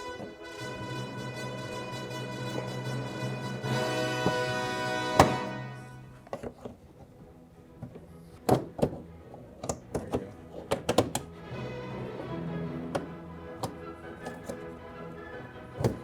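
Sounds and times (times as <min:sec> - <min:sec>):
background music: 0:00.0 - 0:16.0
loud thunk: 0:05.2 - 0:05.5.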